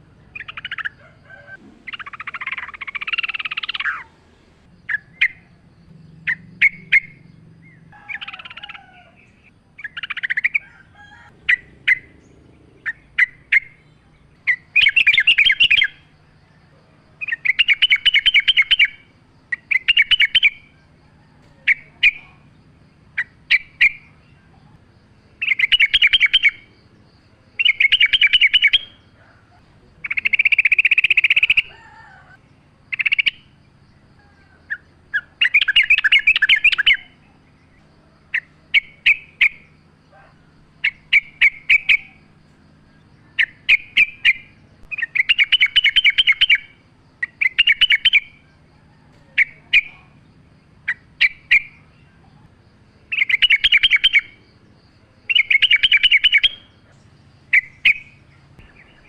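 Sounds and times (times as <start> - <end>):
bird chattering song: 0.0 - 59.0
single bird chirps: 0.4 - 10.8.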